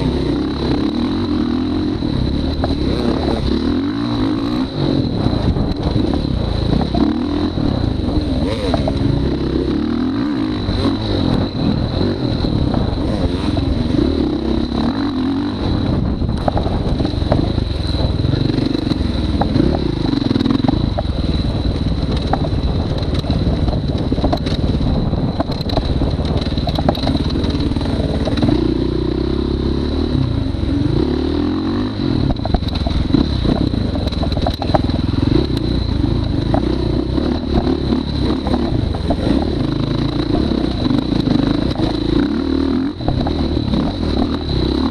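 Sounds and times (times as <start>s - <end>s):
dirt bike engine revving: 0.0s - 44.9s
light clatter: 10.4s - 28.9s, 32.1s - 44.9s.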